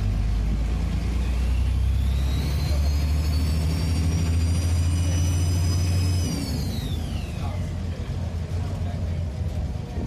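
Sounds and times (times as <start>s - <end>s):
bus engine drone: 0.0s - 10.0s
turbocharger whistle: 1.2s - 7.4s.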